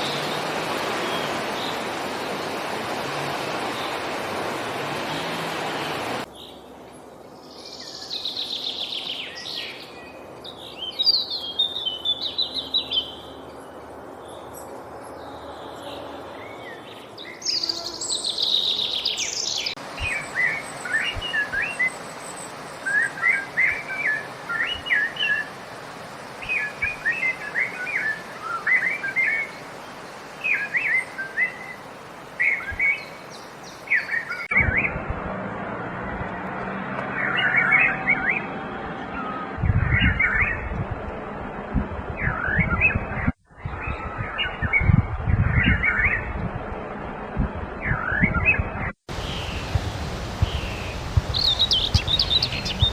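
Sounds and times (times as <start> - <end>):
high sweeping bird calls: 26.2 - 35.0, 50.4 - 52.9.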